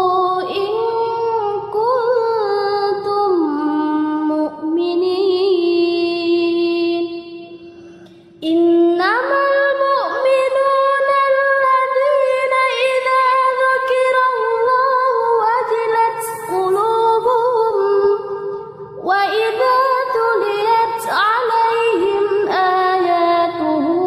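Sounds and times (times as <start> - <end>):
person reciting melodically: 19.0 - 24.0.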